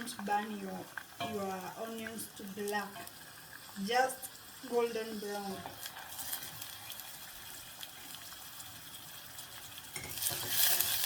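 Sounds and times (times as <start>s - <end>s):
onions sizzling in hot oil: 0.0s - 11.0s.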